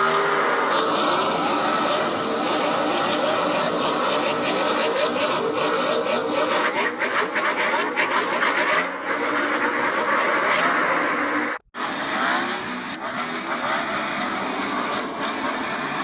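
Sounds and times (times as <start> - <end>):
reversed race car engine: 0.0 - 16.0.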